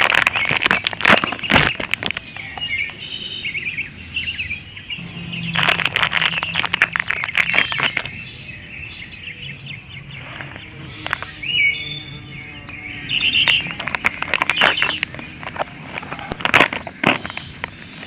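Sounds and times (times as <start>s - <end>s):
crunchy candy being chewed: 0.0s - 2.2s, 5.5s - 8.1s, 13.4s - 17.8s.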